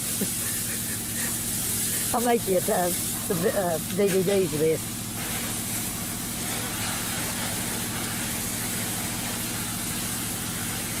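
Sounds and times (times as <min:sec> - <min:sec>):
steady hissing: 0:00.0 - 0:11.0.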